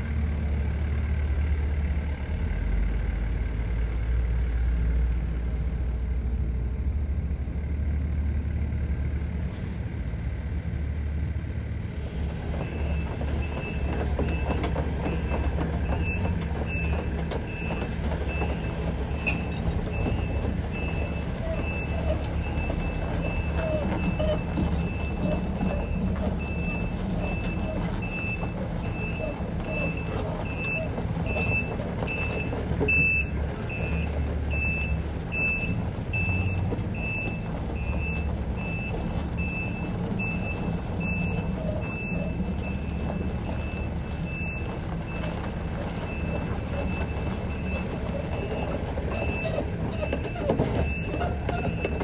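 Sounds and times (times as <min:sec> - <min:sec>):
excavator diesel engine running: 0:00.0 - 0:52.0
travel alarm beeping: 0:48.4 - 0:52.0.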